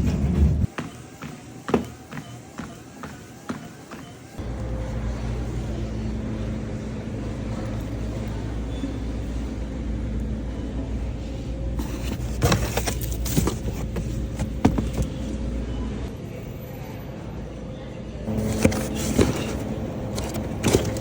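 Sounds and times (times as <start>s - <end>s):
vehicle engine running: 4.4s - 16.1s, 18.3s - 21.0s.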